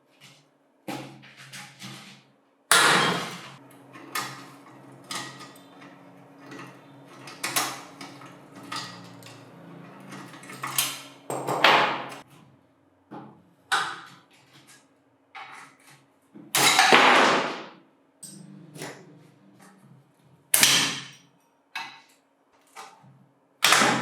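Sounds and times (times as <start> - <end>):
metal tools knocking and clanking: 2.7 - 12.2.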